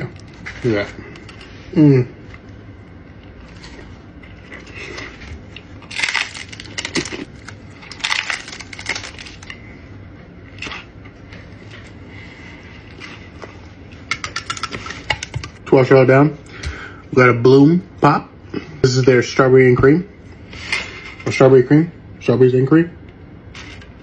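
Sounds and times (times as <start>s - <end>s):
taco shell crunching: 3.0s - 9.6s, 14.0s - 15.6s.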